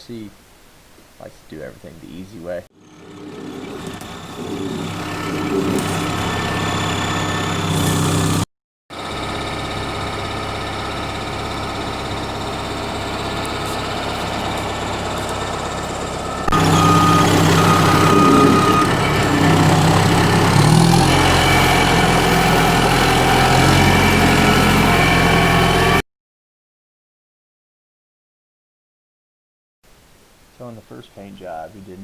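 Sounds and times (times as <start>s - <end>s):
engine running steadily: 2.8s - 8.4s, 9.0s - 26.0s.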